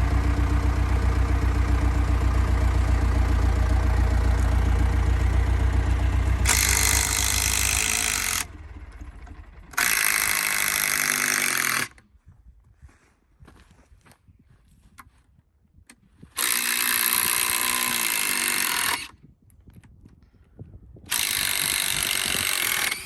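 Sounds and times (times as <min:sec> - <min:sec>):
machine engine idling: 0:00.0 - 0:12.0
power tool bursts: 0:06.4 - 0:08.5, 0:09.7 - 0:12.0, 0:16.4 - 0:19.1, 0:21.1 - 0:23.0.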